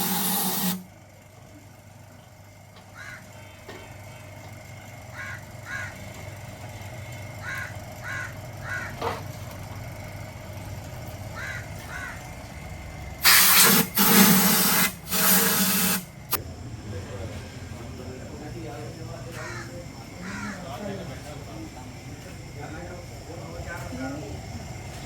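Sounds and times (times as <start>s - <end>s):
crows cawing: 2.8s - 3.6s, 5.1s - 6.3s, 7.4s - 9.2s, 11.3s - 12.4s, 19.3s - 20.8s.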